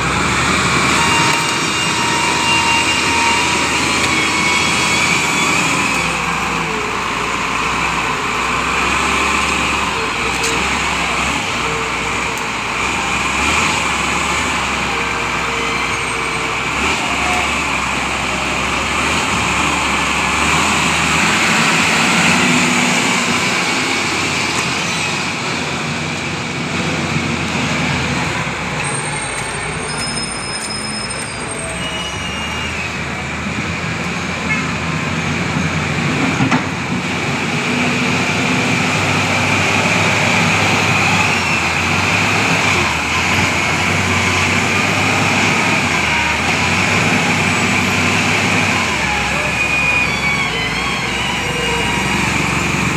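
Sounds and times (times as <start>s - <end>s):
heavy vehicle engine running: 0.0s - 52.9s
faint high whistles: 28.8s - 33.0s.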